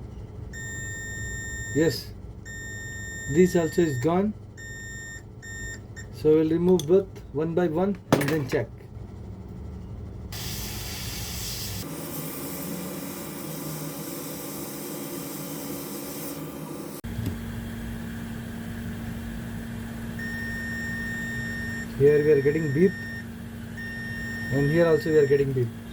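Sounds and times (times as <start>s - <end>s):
hot air station hissing: 10.3s - 17.0s.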